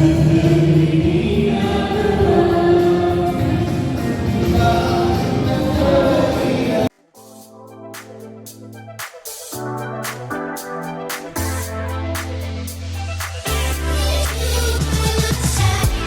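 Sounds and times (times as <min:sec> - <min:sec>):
choir singing with accompaniment: 0:00.0 - 0:06.9.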